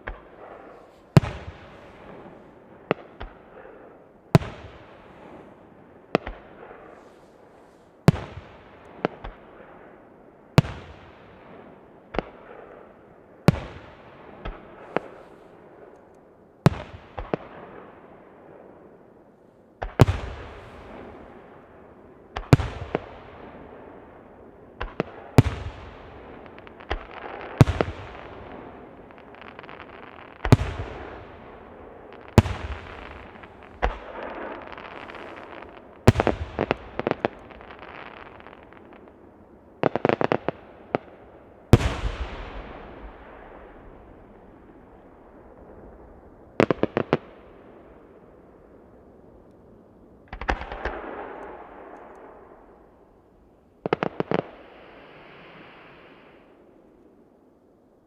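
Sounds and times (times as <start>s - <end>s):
fireworks bangs with echo: 0.0s - 7.3s, 10.6s - 15.9s, 19.8s - 47.9s, 50.3s - 52.7s
fireworks crackling: 24.8s - 47.4s, 53.8s - 56.6s.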